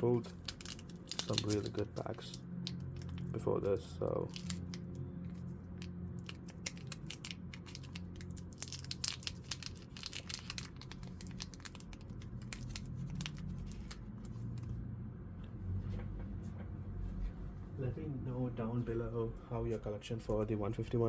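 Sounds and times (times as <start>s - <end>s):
foil wrapper crinkling: 0.0s - 3.4s, 4.3s - 4.9s, 6.2s - 14.1s
low steady hum: 0.0s - 21.0s.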